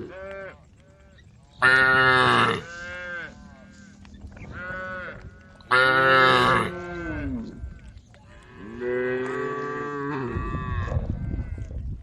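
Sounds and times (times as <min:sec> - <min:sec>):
cattle mooing: 0:01.6 - 0:03.4, 0:04.5 - 0:07.6.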